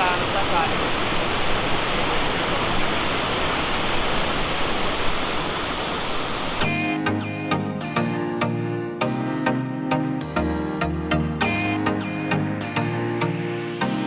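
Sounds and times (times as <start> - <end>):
waterfall rushing: 0.0 - 6.8
music: 6.6 - 14.0.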